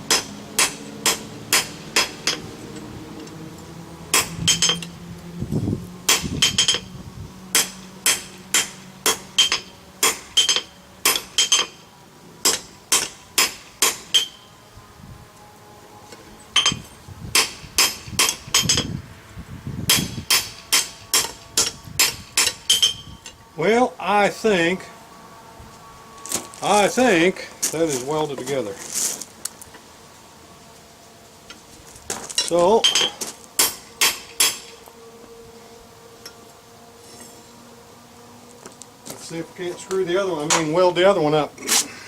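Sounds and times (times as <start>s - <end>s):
hammer striking steel on anvil: 0.1s - 2.5s, 4.1s - 4.9s, 6.1s - 6.9s, 7.5s - 11.8s, 12.4s - 14.4s, 16.6s - 18.9s, 19.9s - 23.0s, 32.5s - 34.8s.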